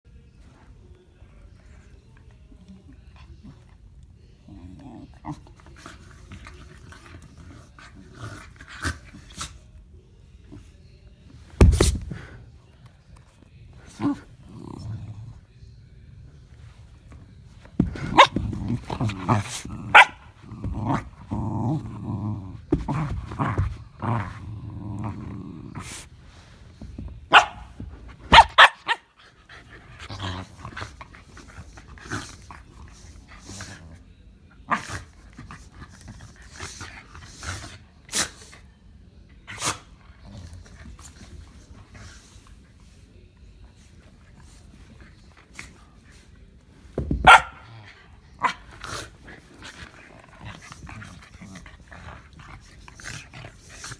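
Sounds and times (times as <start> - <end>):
dogs growling: 4.4 - 9.6, 13.8 - 15.5, 17.6 - 37.9, 39.5 - 42.9, 44.2 - 53.9
dogs barking: 19.2 - 20.4, 27.3 - 29.1, 47.2 - 47.7.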